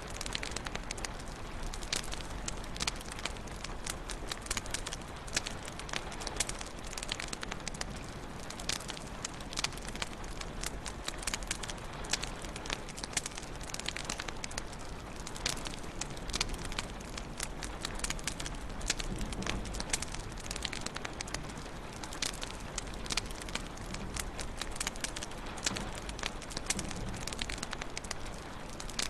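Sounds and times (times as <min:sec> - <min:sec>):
fire popping and snapping: 0:00.0 - 0:29.0
low rumble of flames: 0:00.0 - 0:29.0.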